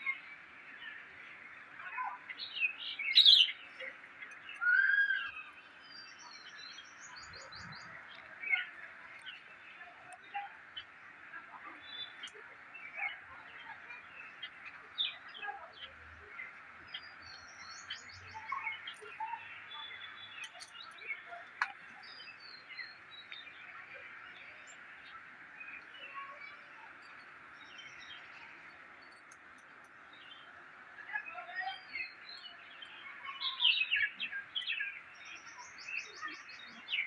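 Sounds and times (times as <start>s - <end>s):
birds chirping and calling: 0.0s - 37.0s.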